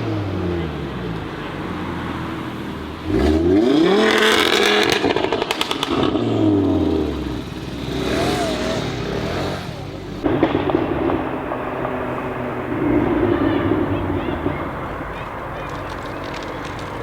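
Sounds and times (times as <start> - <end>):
car engine accelerating: 0.0 - 17.0
exhaust crackles and pops: 3.1 - 8.1, 10.2 - 17.0.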